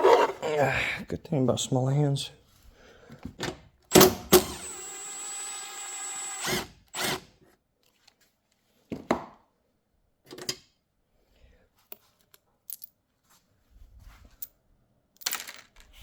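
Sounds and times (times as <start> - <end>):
power drill-driver running: 3.9 - 7.3.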